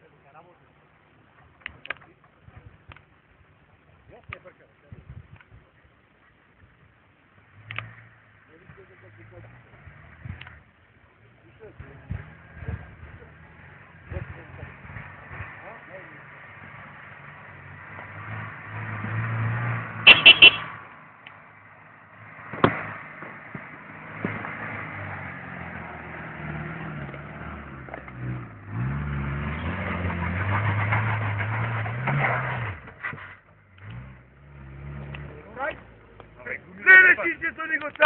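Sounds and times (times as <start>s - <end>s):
car engine pulling off-road: 0.0s - 38.0s
short loud sharp sounds: 20.1s - 20.8s.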